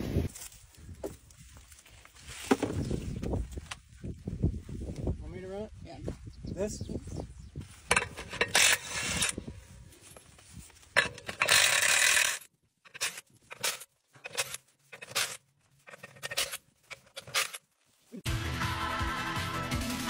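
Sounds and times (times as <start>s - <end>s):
tool scraping and knocking: 7.9s - 9.4s, 10.9s - 17.6s
rushing tool noise burst: 8.2s - 9.4s, 11.0s - 15.4s
music: 18.2s - 20.0s.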